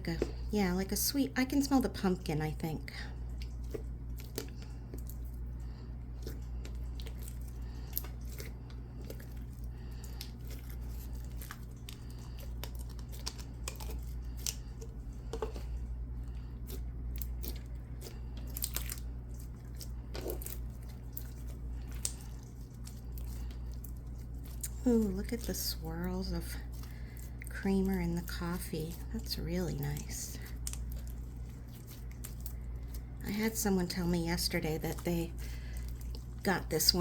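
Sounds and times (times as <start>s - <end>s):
slime squishing with wet clicks: 1.6s - 37.0s.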